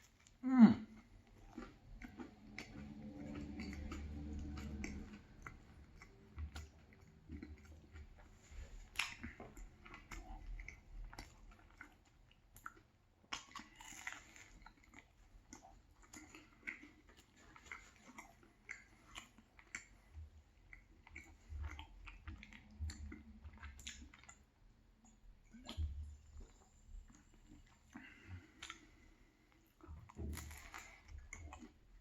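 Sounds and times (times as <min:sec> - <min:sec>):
chewing and crunching: 0:00.0 - 0:32.0
wet mouth clicks: 0:01.3 - 0:08.0, 0:25.0 - 0:26.5, 0:27.9 - 0:28.9.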